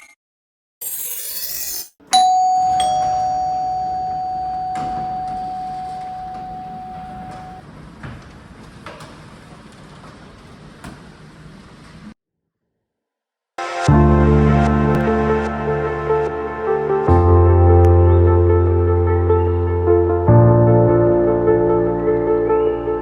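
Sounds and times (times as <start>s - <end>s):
bell-like ding: 2.1s - 7.6s.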